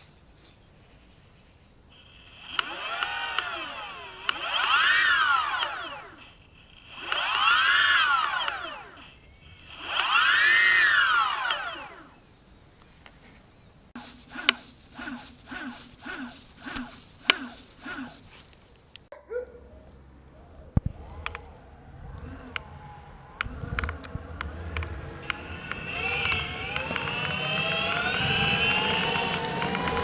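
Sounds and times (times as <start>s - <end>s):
sharp clicks: 1.9s - 12.1s, 20.7s - 30.0s
electric motors whining: 1.9s - 12.2s, 14.0s - 18.6s, 19.9s - 30.0s.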